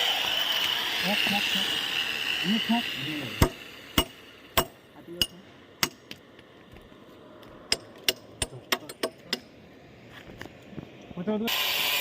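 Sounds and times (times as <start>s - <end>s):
hammer striking steel: 3.4s - 6.1s, 7.7s - 9.5s.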